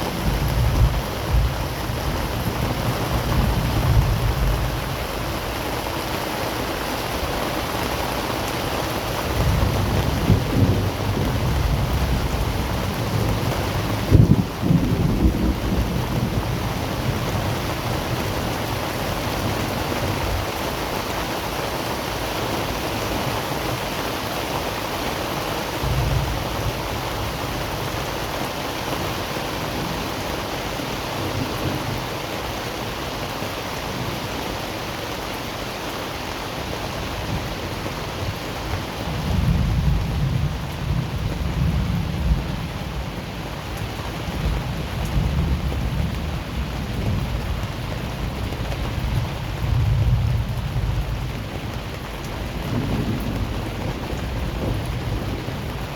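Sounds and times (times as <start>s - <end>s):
thunder rumbling: 0.0s - 6.2s, 7.2s - 20.8s, 37.0s - 55.9s
heavy rain: 0.0s - 55.9s.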